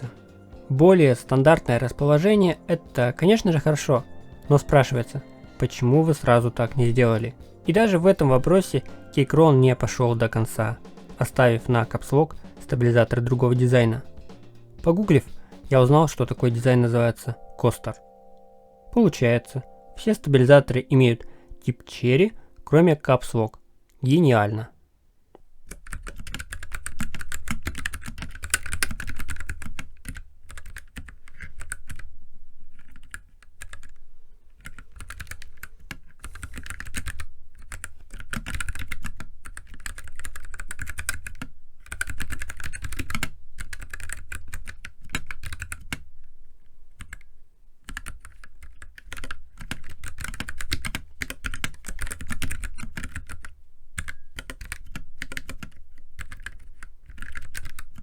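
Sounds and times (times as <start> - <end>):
mechanical keyboard key clacks: 25.6 - 32.1, 34.6 - 46.0, 47.9 - 58.0.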